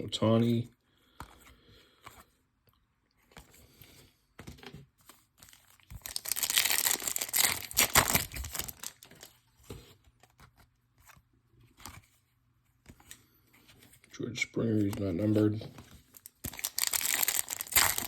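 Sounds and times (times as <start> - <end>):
wrapper and cards rustling: 3.2 - 18.0
foil pack tearing: 6.0 - 9.0, 16.4 - 18.0.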